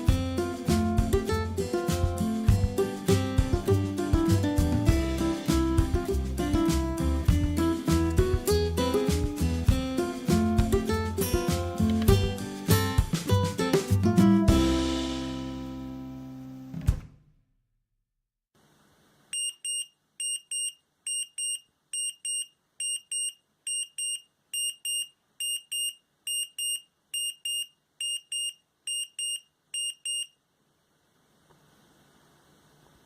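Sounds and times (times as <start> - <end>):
alarm clock buzzer double beeps: 19.4 - 30.4.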